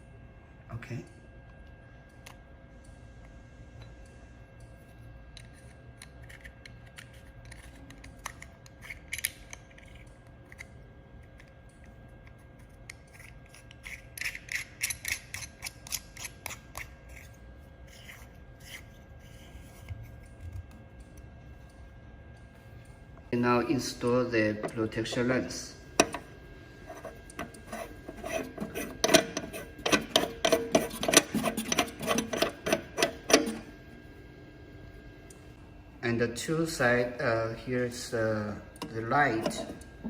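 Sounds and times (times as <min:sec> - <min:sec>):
faint steady hum: 0:00.0 - 0:40.0
clicks taps and rubbing: 0:26.9 - 0:33.6.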